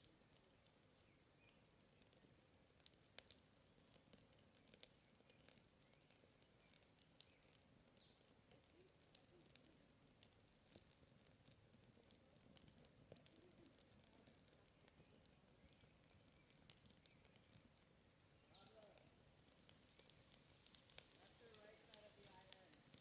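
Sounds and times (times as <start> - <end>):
bird chirp: 0.0 - 1.6, 5.2 - 8.2, 14.7 - 18.8
campfire crackling and popping: 0.0 - 23.0.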